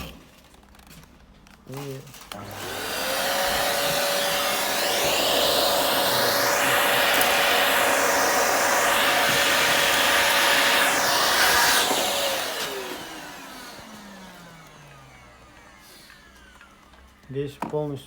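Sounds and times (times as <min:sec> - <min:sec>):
vacuum motor winding down: 0:02.1 - 0:17.6
vacuum cleaner running: 0:02.1 - 0:18.0.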